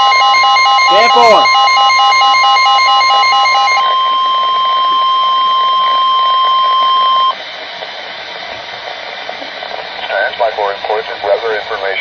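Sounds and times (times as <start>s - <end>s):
high warning beep: 0.0s - 7.4s
radio static hiss: 3.7s - 12.0s.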